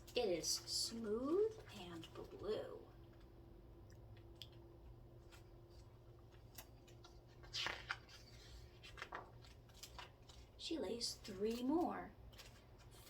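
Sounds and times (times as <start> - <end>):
faint steady hum: 0.0 - 13.0
book page turning: 5.2 - 13.0.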